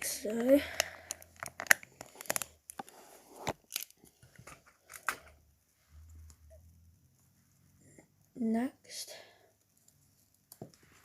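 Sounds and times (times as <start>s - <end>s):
lego bricks clicking: 0.2s - 2.9s.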